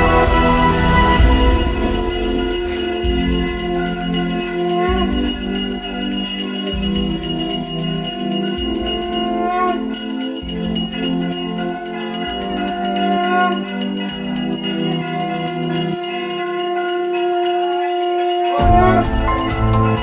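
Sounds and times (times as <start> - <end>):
low pulse: 0.0 - 13.2
jingling bells: 0.0 - 20.0
sustained tones: 0.0 - 20.0.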